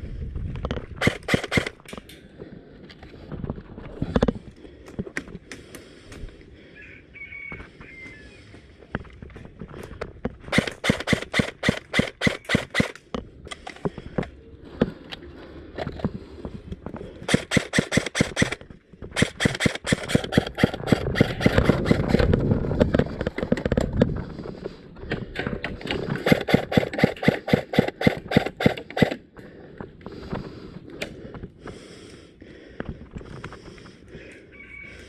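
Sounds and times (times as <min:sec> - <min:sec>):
airsoft guns firing: 0:01.0 - 0:01.9, 0:10.5 - 0:13.0, 0:17.2 - 0:18.6, 0:19.2 - 0:22.3, 0:26.2 - 0:29.2.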